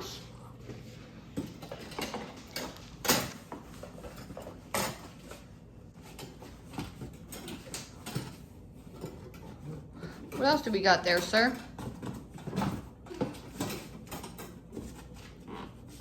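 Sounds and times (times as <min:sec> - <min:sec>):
parts clattering and knocking: 0:01.3 - 0:15.4.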